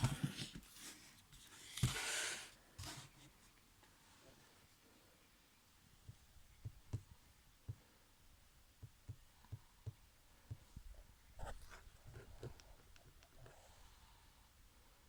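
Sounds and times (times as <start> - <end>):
faint low thumps and taps: 6.0 - 7.9, 8.8 - 13.3.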